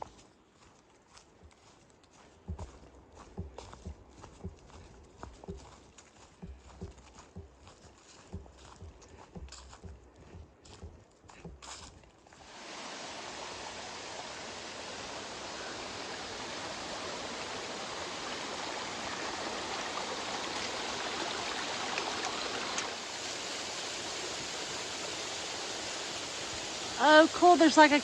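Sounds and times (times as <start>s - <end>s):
footsteps: 0.0s - 12.5s
waterfall rushing: 12.4s - 28.0s.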